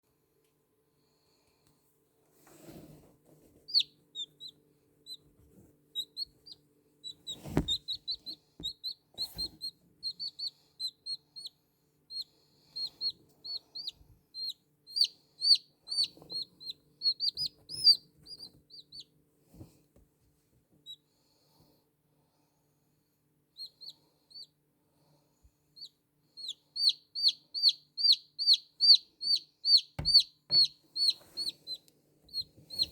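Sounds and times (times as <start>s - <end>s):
chick peeping: 3.7s - 5.4s, 6.0s - 19.1s, 25.8s - 32.9s.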